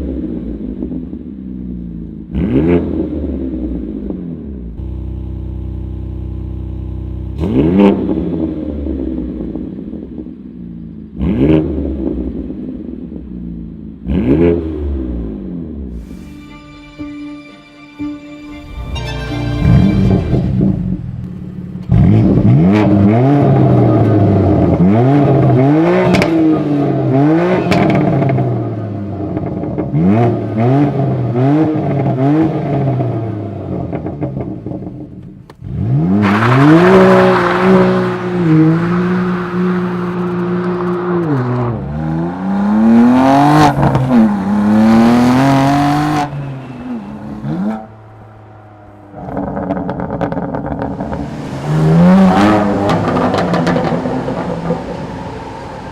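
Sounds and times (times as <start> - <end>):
car engine revving: 0.0 - 16.4, 18.6 - 55.9.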